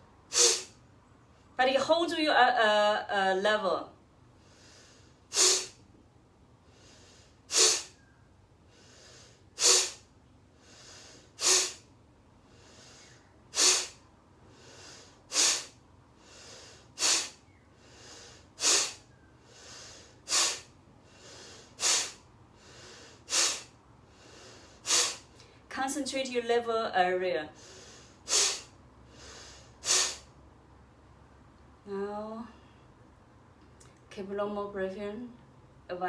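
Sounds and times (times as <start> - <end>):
woman breathing forcefully: 4.4 - 5.8, 6.6 - 8.0, 8.6 - 25.7, 27.6 - 30.4.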